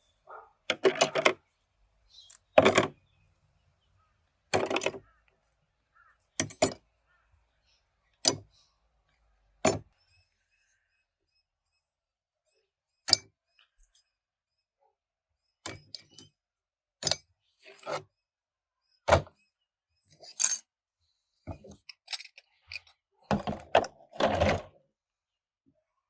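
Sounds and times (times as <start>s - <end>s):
metal parts knocking and clinking: 2.2s - 2.9s, 4.6s - 5.0s, 20.2s - 20.6s, 21.9s - 24.6s.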